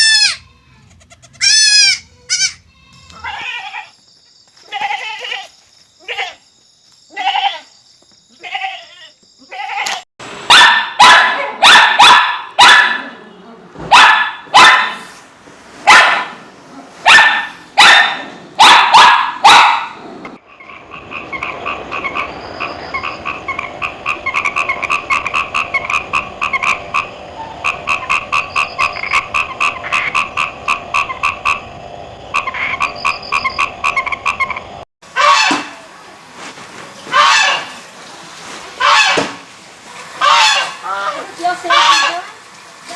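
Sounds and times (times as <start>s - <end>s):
dog barking loudly: 10.5s - 13.2s, 13.9s - 15.1s, 15.8s - 16.4s, 17.0s - 20.0s
frogs croaking: 20.4s - 34.8s.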